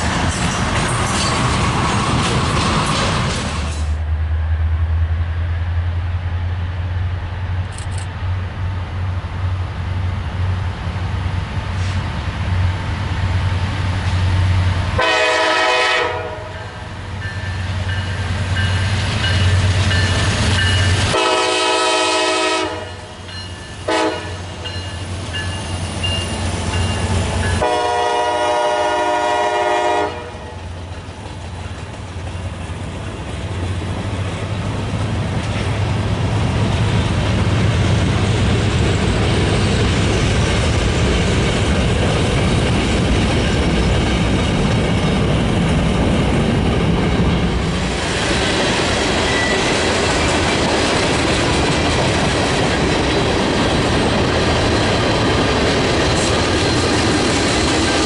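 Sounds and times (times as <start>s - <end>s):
low rumble of train: 0.0s - 58.0s
locomotive air horn blasts: 15.0s - 16.8s, 21.1s - 23.2s, 23.9s - 24.4s, 27.6s - 30.6s.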